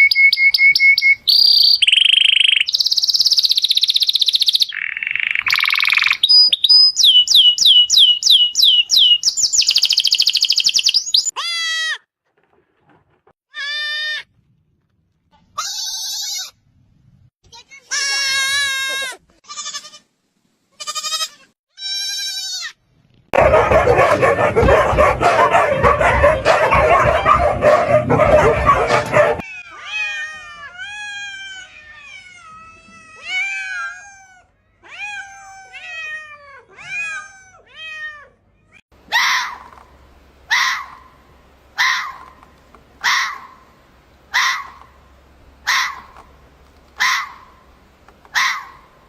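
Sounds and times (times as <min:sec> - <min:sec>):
dense noisy animal calling: 0:23.4 - 0:29.4
harsh animal calls: 0:23.4 - 0:29.4.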